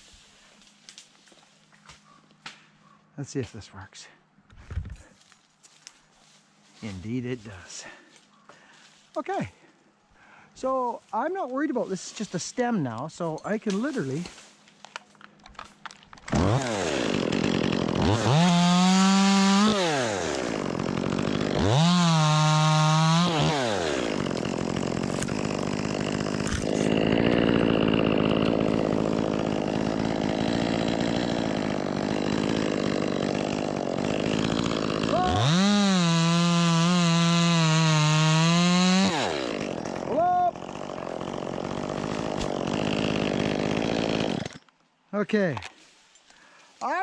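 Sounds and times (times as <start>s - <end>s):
chainsaw cutting wood: 13.7s - 44.8s
chainsaw revving: 16.3s - 44.6s.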